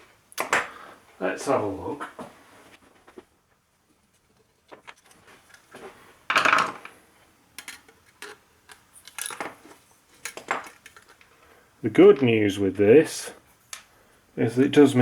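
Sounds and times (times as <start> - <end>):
metal parts clinking: 7.6 - 9.5.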